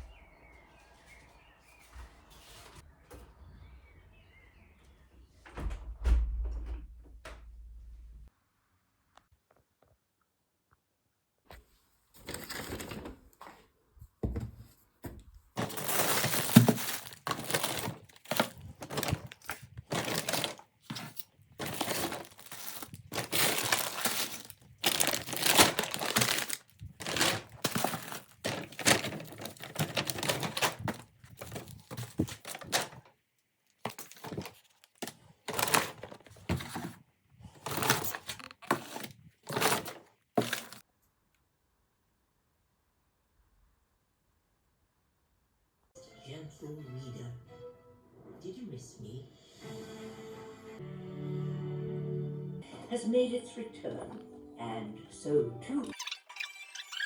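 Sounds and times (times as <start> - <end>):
rustling and clattering objects: 11.6 - 33.1, 33.7 - 40.8.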